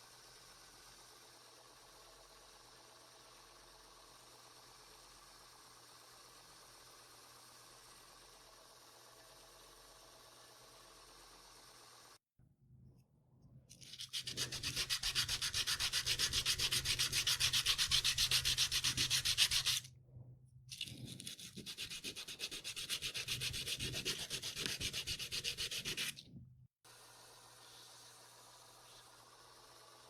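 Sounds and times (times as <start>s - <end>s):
hand sanding wood: 14.0s - 19.9s, 20.8s - 26.2s.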